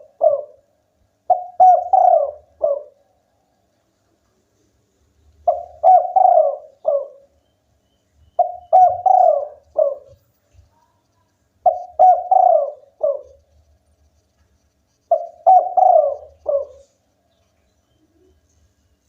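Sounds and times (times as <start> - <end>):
dove cooing: 0.0 - 0.7, 1.3 - 3.0, 5.4 - 7.3, 8.4 - 10.2, 11.6 - 13.5, 15.1 - 17.0.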